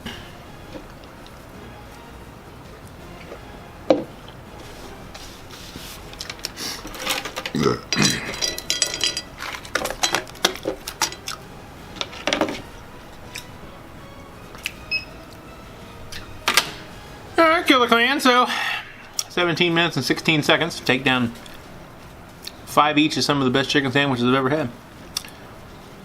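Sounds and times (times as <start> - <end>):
dishes clattering and clinking: 6.1 - 11.4, 12.0 - 13.6.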